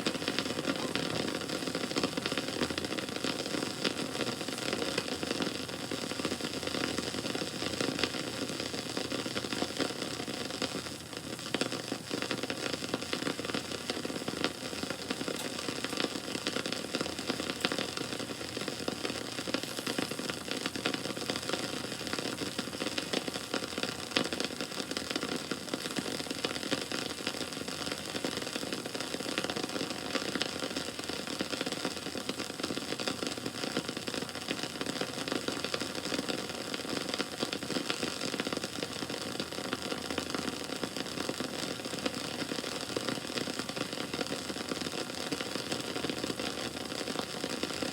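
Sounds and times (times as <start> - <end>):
bonfire crackling: 0.0 - 47.9.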